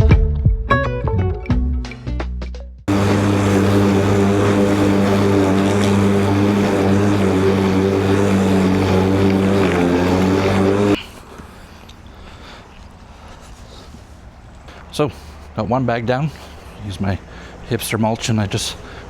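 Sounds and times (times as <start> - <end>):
lawn mower humming: 2.9 - 11.4.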